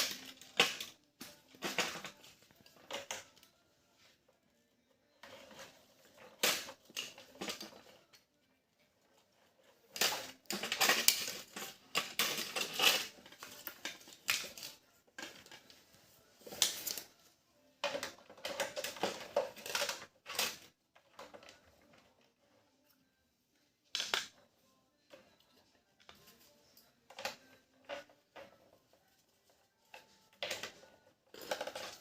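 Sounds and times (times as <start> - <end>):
plastic toy pieces clattering: 0.0 - 3.4, 9.8 - 15.7, 17.8 - 22.0, 30.0 - 32.0.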